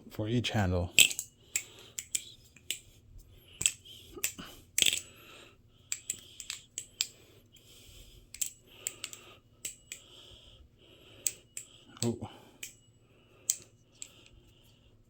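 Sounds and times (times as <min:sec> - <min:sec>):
butterfly knife metallic clicks: 0:01.0 - 0:02.9, 0:03.6 - 0:05.1, 0:05.9 - 0:07.2, 0:08.3 - 0:10.1, 0:11.2 - 0:12.8.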